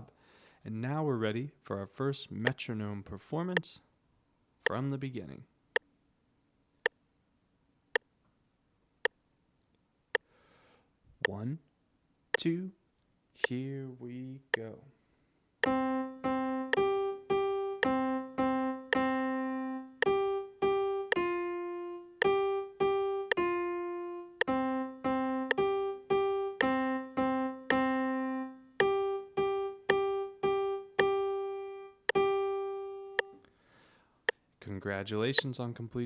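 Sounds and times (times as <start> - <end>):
metronome clicking: 15.6 - 33.5
piano simple melody: 15.6 - 33.5.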